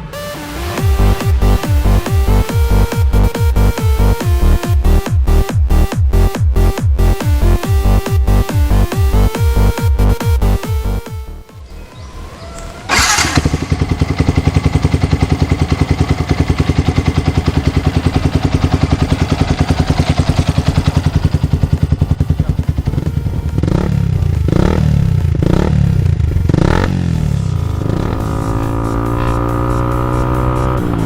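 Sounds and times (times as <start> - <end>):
motorcycle engine idling: 0.8 - 31.0
motorcycle throttle revving: 11.6 - 31.0.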